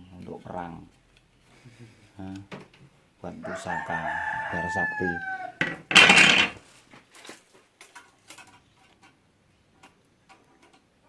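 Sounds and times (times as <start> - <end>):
metal parts clattering and scraping: 5.6 - 8.6
faint clicks and knocks: 7.2 - 11.0.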